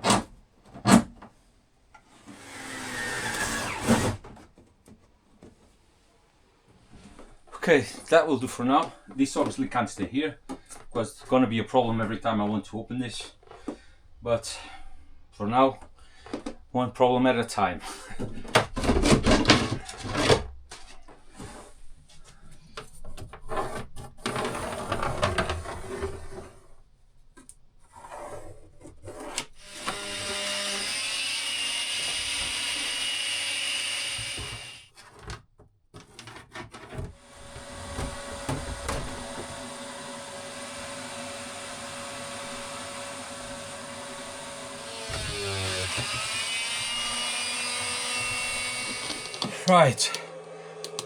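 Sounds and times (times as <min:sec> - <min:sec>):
wood and tools clattering: 0:18.2 - 0:21.0, 0:34.2 - 0:39.8, 0:43.5 - 0:49.8.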